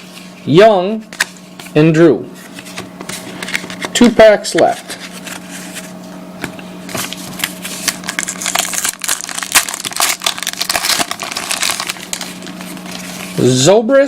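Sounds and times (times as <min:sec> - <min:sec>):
cards being handled: 0:02.4 - 0:13.4
wrapper tearing and crinkling: 0:07.0 - 0:13.4.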